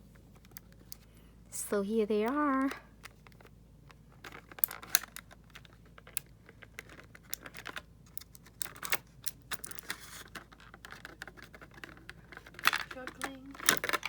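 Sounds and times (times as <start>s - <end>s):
plastic pieces clicking: 4.2s - 14.0s.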